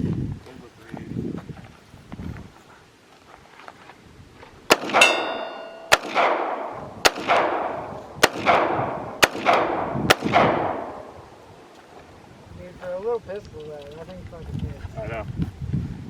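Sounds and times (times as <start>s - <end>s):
handgun shots echoing: 4.7s - 11.2s
steel target ringing: 4.8s - 6.8s.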